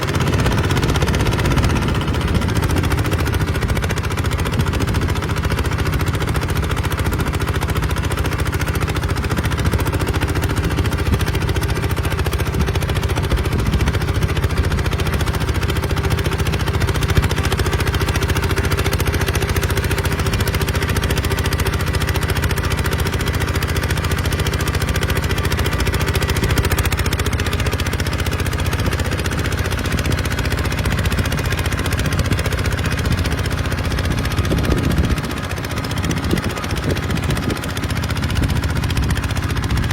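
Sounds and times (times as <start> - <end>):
diesel engine chugging: 0.0 - 39.9.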